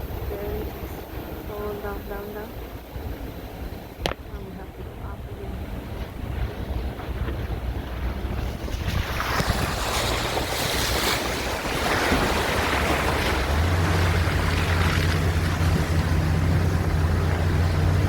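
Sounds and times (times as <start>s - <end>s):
water rushing and splashing: 0.0s - 18.0s
wind on microphone: 0.0s - 18.0s
vehicle engine running: 12.1s - 18.0s.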